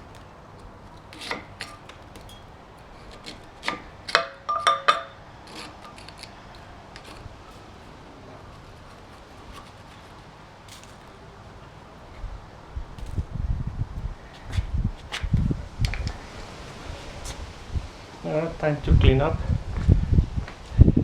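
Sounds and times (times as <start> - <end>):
metal parts clicking and knocking: 0.8 - 7.6.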